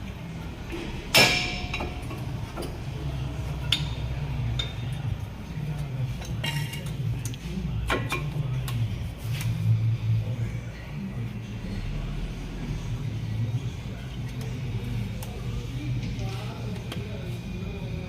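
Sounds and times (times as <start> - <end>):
low steady hum: 0.0 - 18.0.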